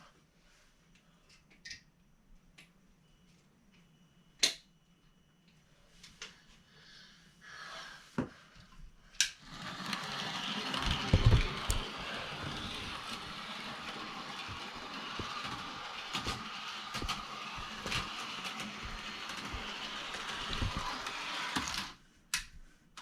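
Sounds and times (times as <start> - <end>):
model train motor whirring: 9.4 - 22.0.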